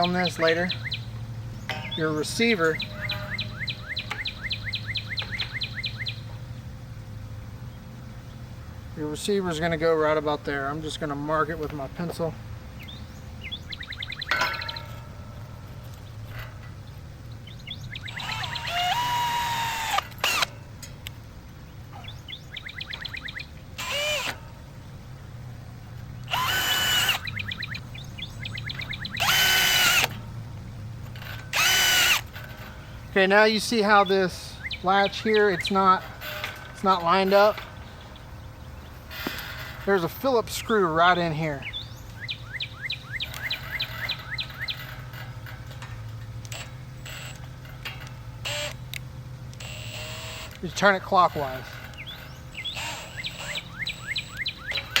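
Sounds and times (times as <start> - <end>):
songbird chirping: 0.0 - 55.0
steady low hum: 0.0 - 55.0
cordless drill whining: 18.2 - 20.5, 23.8 - 24.4, 26.3 - 27.3, 29.2 - 30.2, 31.2 - 32.6, 48.4 - 48.8, 49.6 - 50.6, 52.7 - 53.6.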